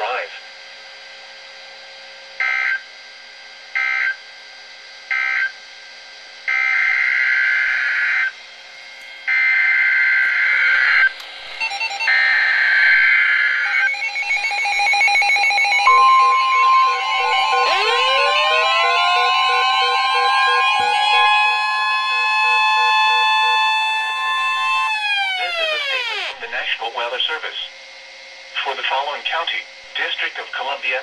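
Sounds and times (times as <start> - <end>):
steady warning tone: 6.4 - 31.0
alarm beeps: 9.3 - 26.3
digital data tone bursts: 10.4 - 26.4.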